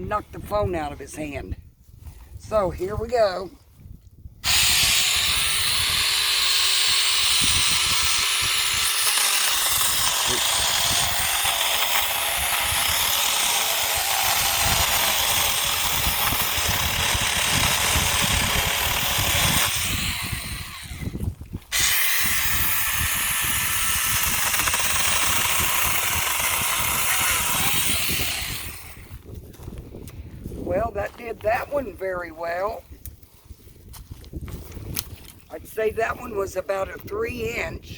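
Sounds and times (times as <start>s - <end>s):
electric chainsaw cutting wood: 4.4s - 29.2s.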